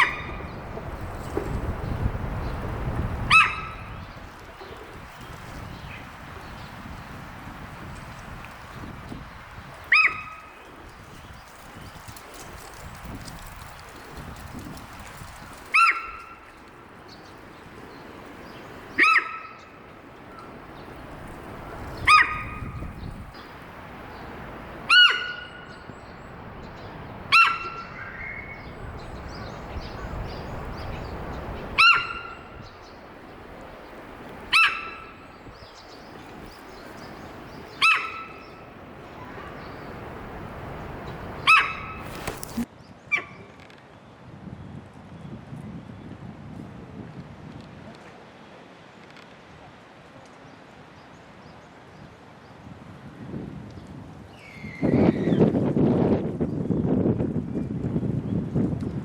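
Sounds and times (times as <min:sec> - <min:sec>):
deer alarm call squeal: 0:24.9 - 0:25.7, 0:31.8 - 0:32.4, 0:34.5 - 0:35.2, 0:37.8 - 0:38.5, 0:41.5 - 0:42.0.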